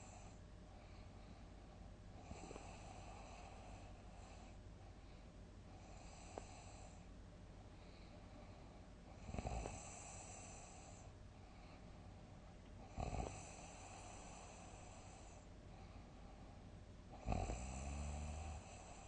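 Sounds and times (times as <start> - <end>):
person snoring heavily: 12.9 - 15.4, 17.2 - 19.0.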